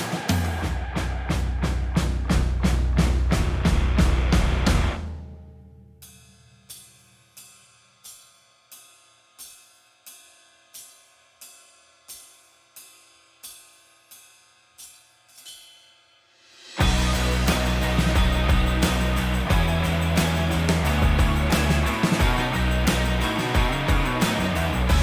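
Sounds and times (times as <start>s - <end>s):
music beat: 16.8s - 25.0s.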